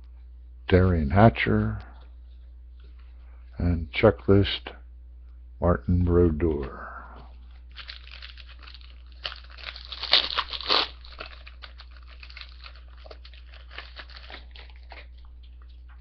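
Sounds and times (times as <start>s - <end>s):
wrapper and cards rustling: 7.3s - 16.0s
foil wrapper crinkling and tearing: 7.5s - 16.0s.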